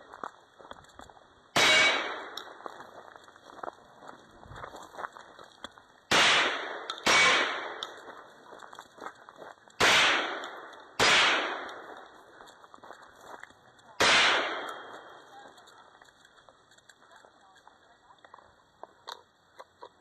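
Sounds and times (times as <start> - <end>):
gunshots: 1.6 - 2.6, 6.1 - 8.2, 9.8 - 12.2, 14.0 - 15.5.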